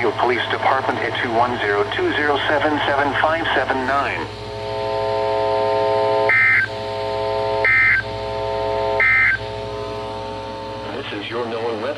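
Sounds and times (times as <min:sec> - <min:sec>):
buzzing chord of low tones: 0:00.0 - 0:11.9
shrill digital warbles: 0:06.3 - 0:06.7, 0:07.6 - 0:08.1, 0:09.0 - 0:09.4.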